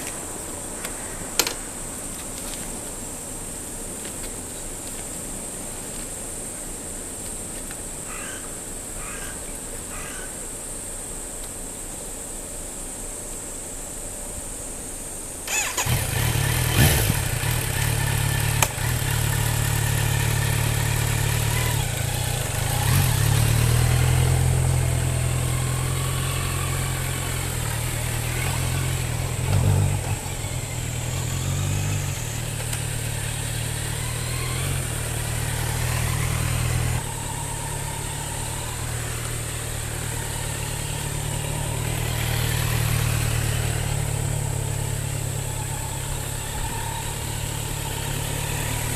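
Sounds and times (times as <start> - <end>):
motorcycle engine starting and idling: 15.3 - 48.9.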